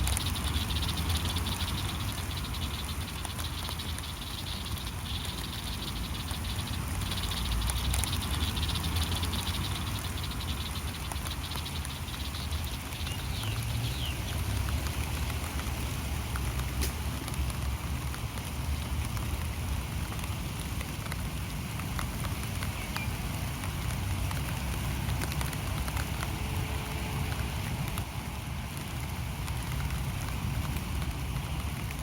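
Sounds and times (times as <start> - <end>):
high rapid pulsing call: 0.0 - 13.6
light rain falling: 0.0 - 32.0
raindrop ticks: 0.0 - 32.0.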